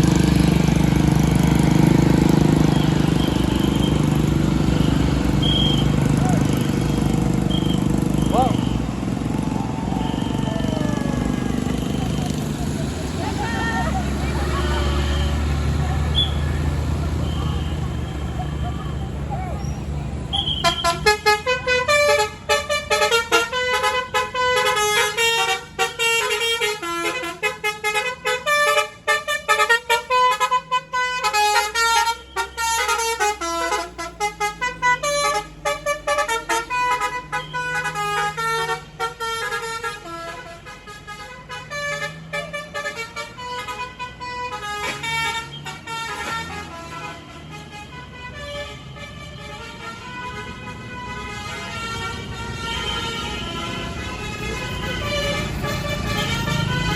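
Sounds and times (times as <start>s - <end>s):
musical air horn playing a tune: 20.3s - 56.9s.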